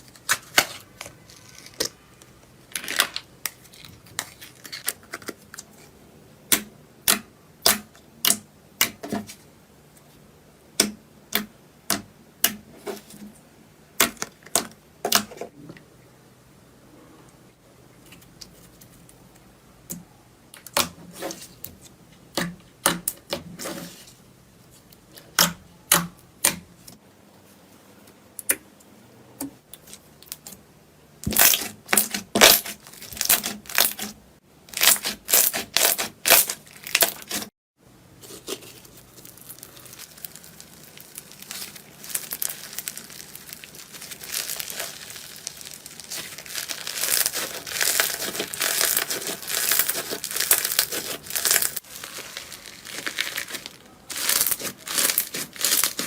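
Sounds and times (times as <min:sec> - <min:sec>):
slime popping and crackling: 0:31.2 - 0:34.1, 0:34.7 - 0:37.5, 0:38.6 - 0:56.0.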